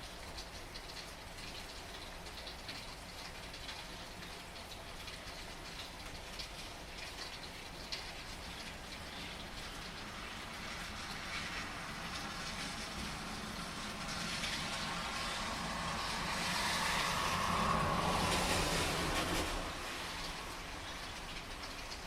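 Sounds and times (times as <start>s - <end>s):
rain pattering: 0.0s - 22.0s
car tyres hissing on wet road: 9.0s - 22.0s.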